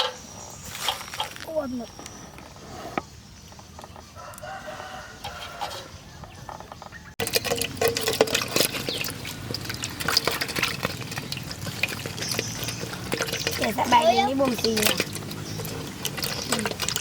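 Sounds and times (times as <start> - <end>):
rooster crowing: 4.2 - 6.2
close clattering and clicking: 6.3 - 17.0.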